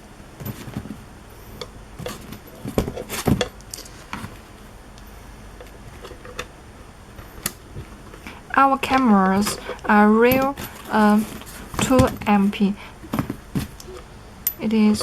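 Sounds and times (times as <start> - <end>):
cable connectors clicking and rattling: 7.1 - 15.0.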